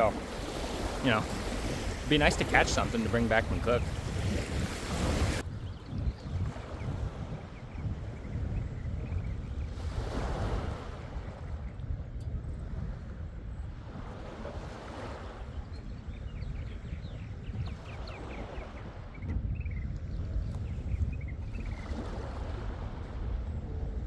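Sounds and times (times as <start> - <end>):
waves washing onto shore: 0.0 - 5.5, 6.1 - 11.7, 13.8 - 16.9
wind buffeting microphone: 0.0 - 24.0.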